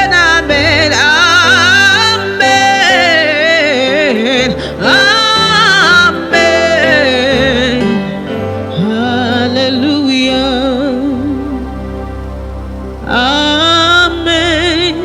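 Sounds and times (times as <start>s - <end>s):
solo voice singing melismatic runs: 0.0s - 12.4s, 13.0s - 15.0s
sustained accompaniment chords: 0.0s - 15.0s.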